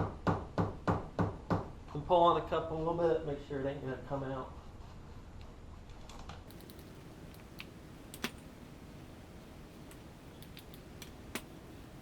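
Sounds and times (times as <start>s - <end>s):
metal parts clicking and clinking: 6.5s - 12.0s.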